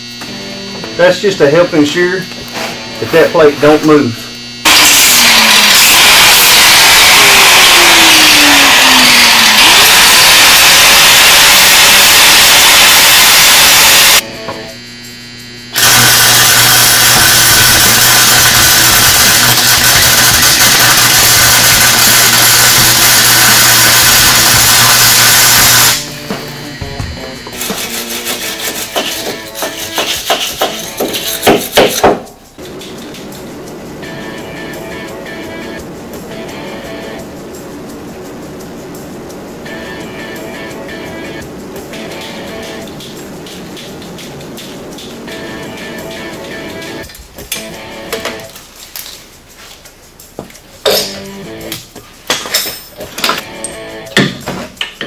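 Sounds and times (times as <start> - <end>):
arc welder hissing: 0.0 - 14.2, 14.8 - 40.7
low hum: 32.5 - 47.2.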